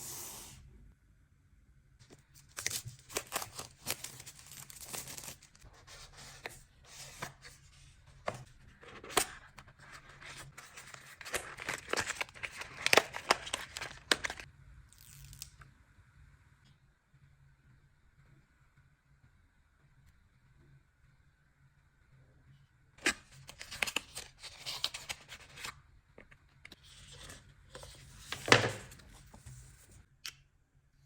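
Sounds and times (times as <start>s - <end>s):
wrapping torn and crinkled: 2.4s - 5.6s.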